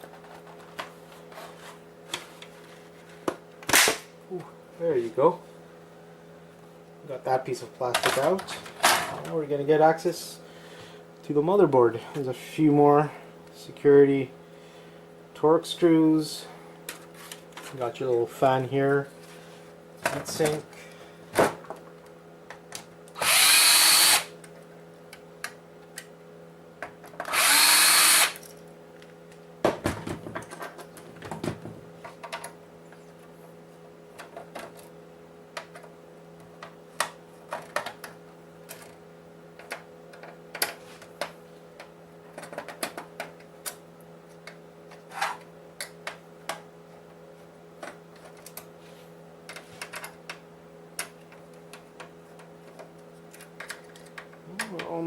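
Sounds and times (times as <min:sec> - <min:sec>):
power drill-driver running: 0:23.2 - 0:24.3, 0:27.2 - 0:28.4.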